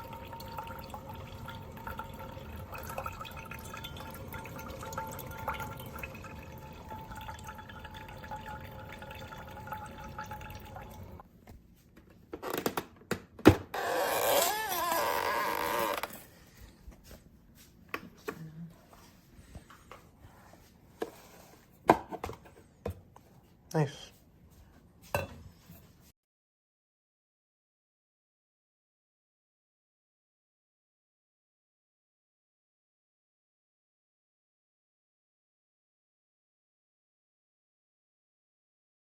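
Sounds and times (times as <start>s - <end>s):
coffee maker dripping: 0.0s - 11.2s.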